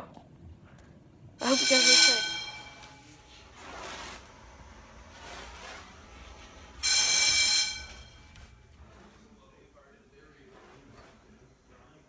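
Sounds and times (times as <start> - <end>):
fire alarm horn: 1.4 - 9.2.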